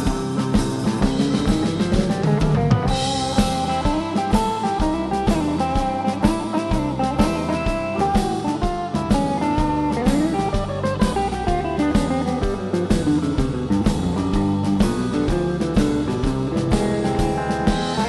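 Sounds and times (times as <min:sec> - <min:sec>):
bass: 0:00.0 - 0:18.0
guitar solo with sliding notes: 0:00.0 - 0:18.0
steady drum beat: 0:00.0 - 0:18.0.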